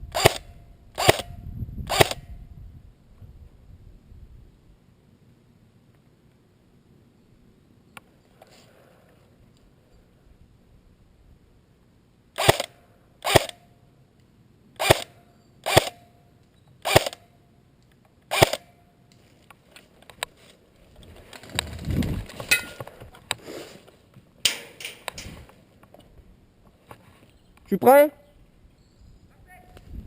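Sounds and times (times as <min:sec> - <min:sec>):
airsoft rifle shots: 0:00.1 - 0:02.3, 0:12.4 - 0:13.6, 0:14.8 - 0:16.1, 0:16.8 - 0:17.3, 0:18.3 - 0:18.8
low rumbling rustle of handling: 0:19.1 - 0:27.7.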